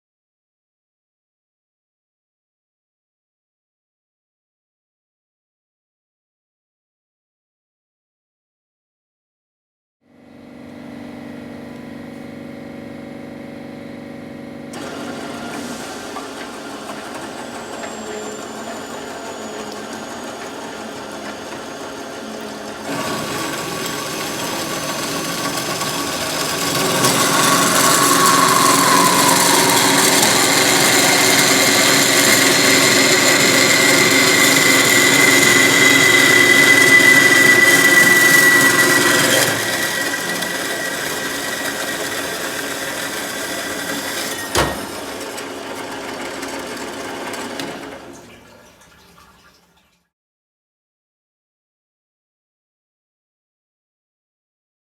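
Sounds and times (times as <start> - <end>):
band saw motor hum: 10.2 - 47.9
high whine: 26.1 - 37.9.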